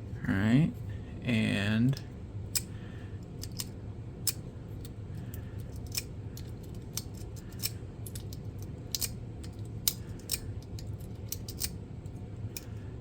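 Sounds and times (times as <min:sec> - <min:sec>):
steady low hum: 0:00.0 - 0:13.0
lock pick clicking: 0:05.7 - 0:11.8.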